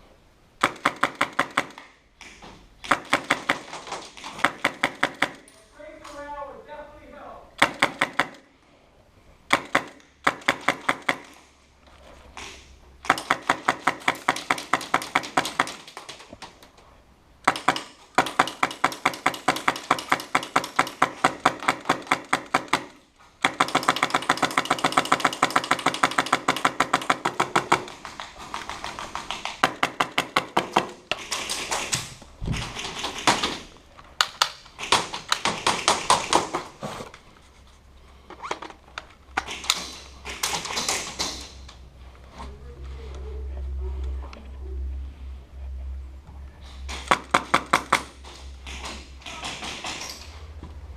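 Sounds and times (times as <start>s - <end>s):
airsoft guns firing bursts: 0.6s - 1.8s, 2.8s - 5.4s, 7.6s - 8.4s, 9.5s - 11.4s, 13.0s - 16.0s, 17.4s - 36.7s, 39.5s - 41.5s.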